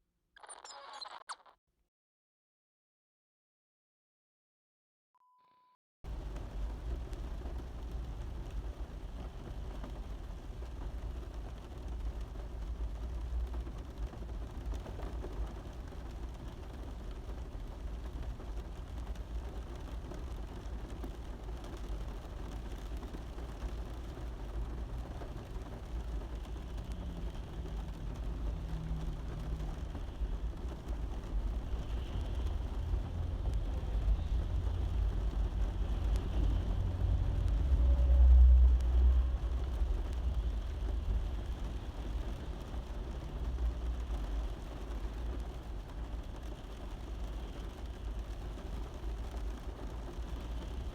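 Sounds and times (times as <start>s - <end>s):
rain on a car roof: 6.1s - 50.9s
deep low rumble: 26.8s - 43.8s.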